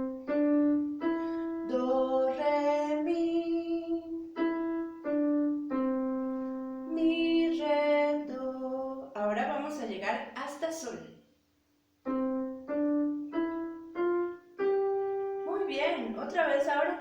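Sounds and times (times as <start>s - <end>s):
piano single notes: 0.0s - 7.6s, 12.0s - 16.4s
woman singing: 1.7s - 4.2s, 6.9s - 9.6s.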